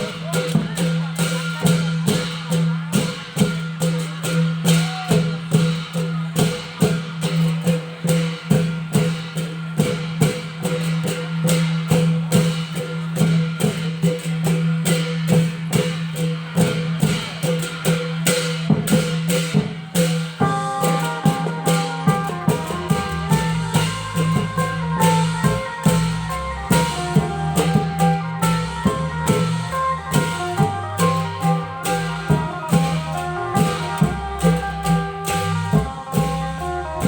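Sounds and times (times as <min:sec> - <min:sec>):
drum strokes in steady beat: 0:00.0 - 0:37.0
melody of held notes: 0:20.4 - 0:37.0.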